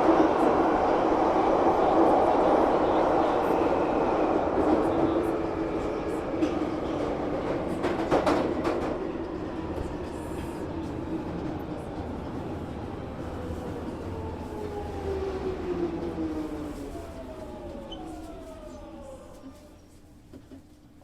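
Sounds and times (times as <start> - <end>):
train wheels rumbling on rail: 0.0 - 21.0
rail clacks: 6.4 - 12.1.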